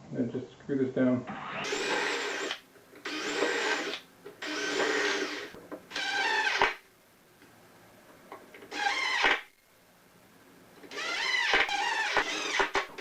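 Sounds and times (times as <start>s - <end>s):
power drill driving screws: 1.5s - 6.8s, 8.7s - 9.5s, 10.9s - 13.0s.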